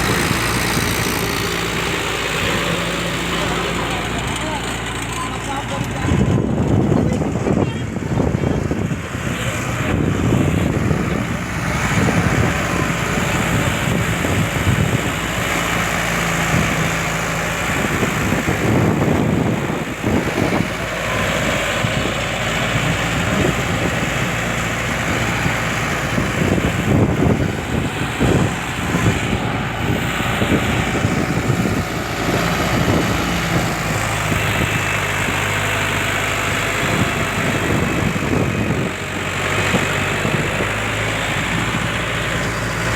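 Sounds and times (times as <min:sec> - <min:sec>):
tractor diesel engine running: 0:00.0 - 0:42.9.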